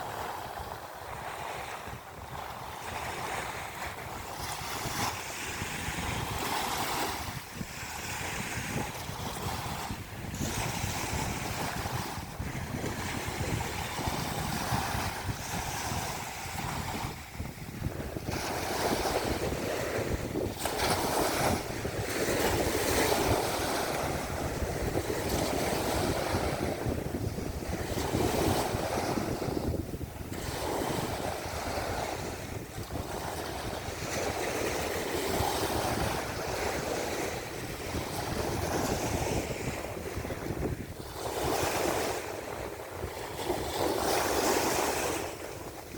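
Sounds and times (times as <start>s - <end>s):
sea waves breaking: 0.0s - 45.9s
wind rumbling on microphone: 0.0s - 45.9s.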